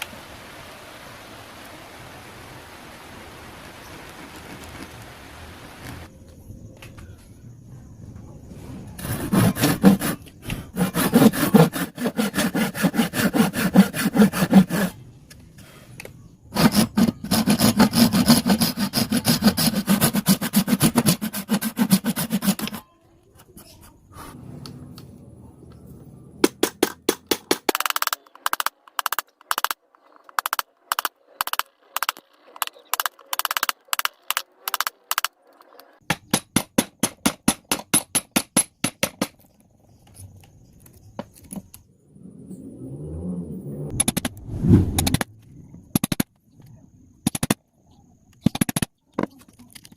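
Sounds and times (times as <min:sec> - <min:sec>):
hand saw cutting wood: 0:09.0 - 0:15.0, 0:16.5 - 0:22.8.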